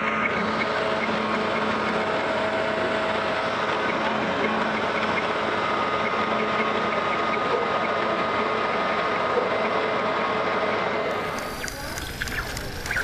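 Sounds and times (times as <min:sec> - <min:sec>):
faint constant whine: 0:00.0 - 0:13.0
motor running: 0:11.1 - 0:13.0.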